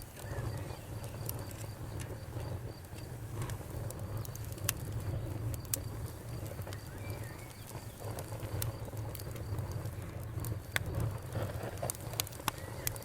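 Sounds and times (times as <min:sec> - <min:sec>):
campfire crackling: 0:00.0 - 0:13.0.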